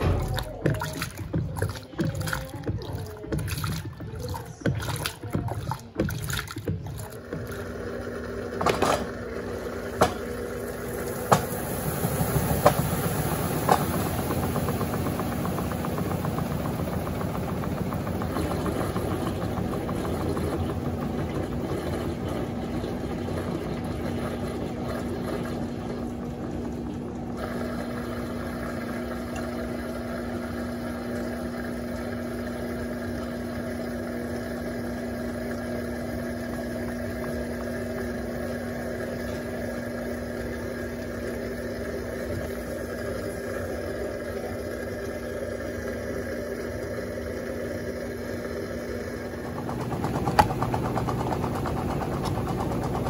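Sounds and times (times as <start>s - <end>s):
washing machine motor hum: 0.0s - 53.0s
washing machine water sloshing: 0.0s - 53.0s.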